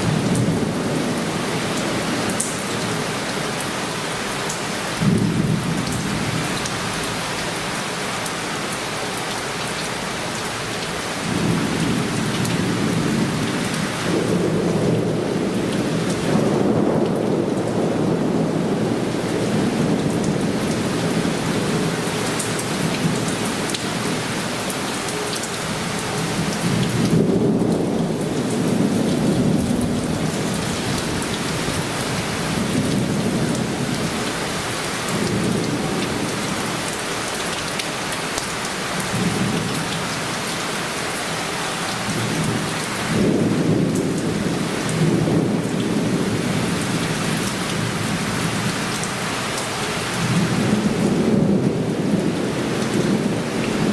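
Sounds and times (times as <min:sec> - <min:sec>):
heavy rain hissing: 0:00.0 - 0:53.9
thunder rumbling: 0:11.2 - 0:24.4, 0:26.2 - 0:34.4, 0:42.1 - 0:48.7, 0:50.2 - 0:53.9.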